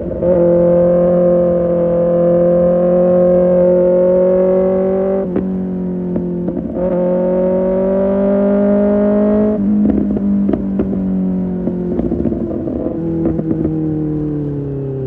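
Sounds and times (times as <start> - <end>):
motorcycle engine revving: 0.0 - 15.0
exhaust crackles and pops: 5.3 - 7.0, 9.8 - 14.6.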